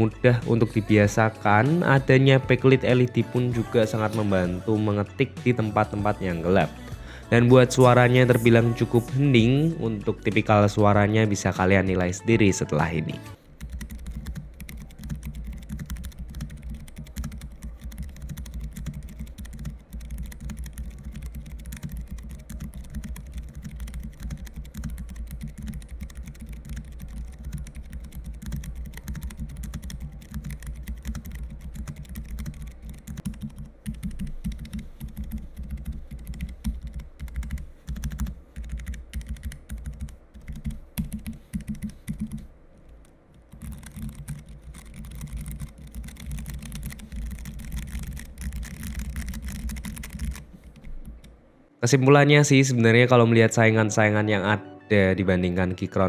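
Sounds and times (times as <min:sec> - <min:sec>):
mechanical keyboard typing: 0:13.5 - 0:51.2.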